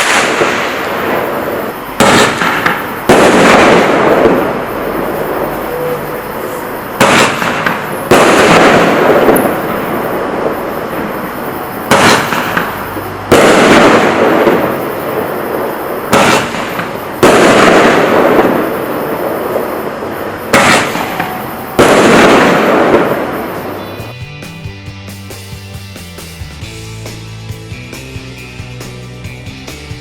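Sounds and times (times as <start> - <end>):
firework bursts: 0.0 - 24.1
firework shots banging: 0.0 - 24.1.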